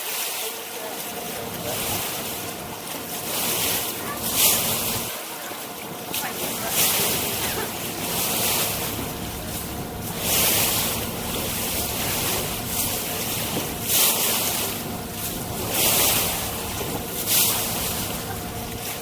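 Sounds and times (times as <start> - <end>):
water rushing along hull: 0.0 - 19.0
water splashing: 0.0 - 19.0
engine hum: 6.1 - 19.0.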